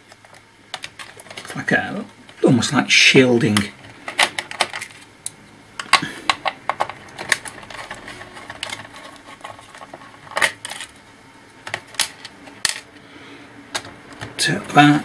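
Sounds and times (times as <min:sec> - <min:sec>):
small parts clicking and clattering: 0:00.0 - 0:01.6, 0:03.6 - 0:05.1, 0:05.8 - 0:11.0, 0:11.6 - 0:13.0.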